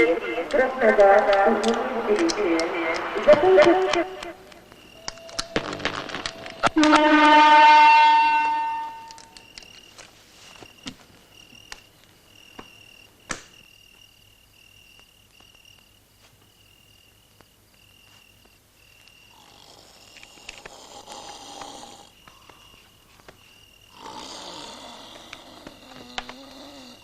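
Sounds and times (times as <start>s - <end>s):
crickets chirping: 0.0s - 27.0s
sharp clicks: 0.4s - 7.0s
man snoring: 19.3s - 22.2s, 23.9s - 27.0s.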